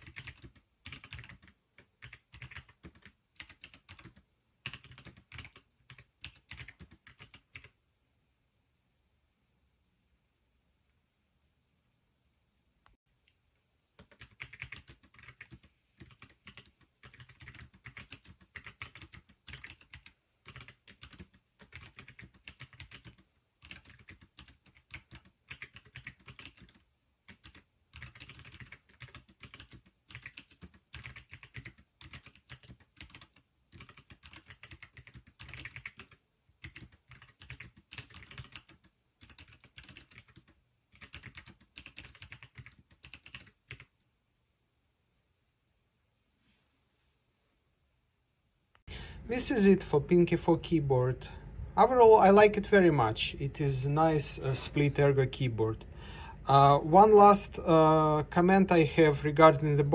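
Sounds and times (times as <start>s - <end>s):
mechanical keyboard typing: 0.0s - 7.7s, 14.0s - 43.9s.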